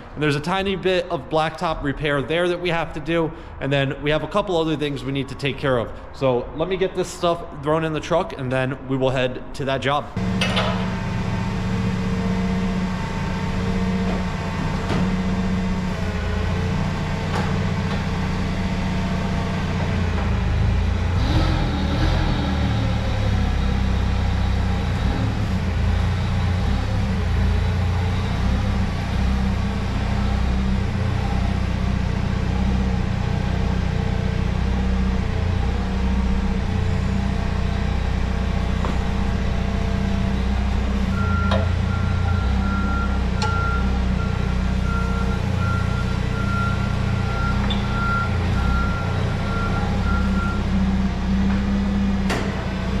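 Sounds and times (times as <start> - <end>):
truck engine droning: 0.0 - 53.0
backup alarm beeping: 40.2 - 50.7.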